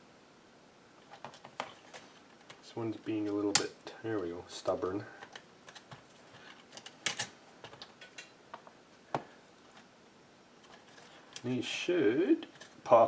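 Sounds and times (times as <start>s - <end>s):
plastic parts clicking and tapping: 5.2s - 9.8s.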